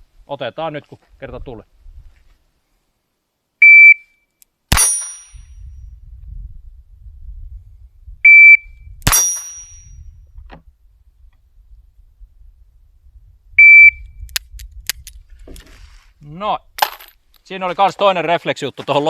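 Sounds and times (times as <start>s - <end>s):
revolver gunshot: 4.7s - 5.4s, 9.0s - 9.8s
steel target ringing: 4.7s - 5.6s, 9.1s - 10.0s.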